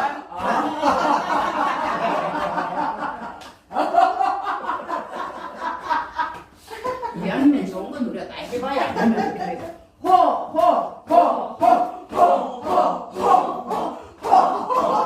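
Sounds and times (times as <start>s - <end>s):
group of people laughing: 0.0s - 7.5s, 8.6s - 9.8s, 13.8s - 15.0s.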